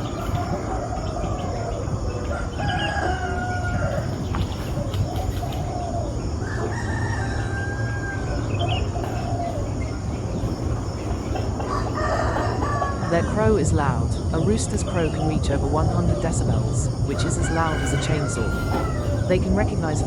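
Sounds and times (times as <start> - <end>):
rooster crowing: 0.0 - 4.3, 6.3 - 9.5, 11.6 - 13.4, 16.9 - 19.3
low background hum: 0.0 - 20.0.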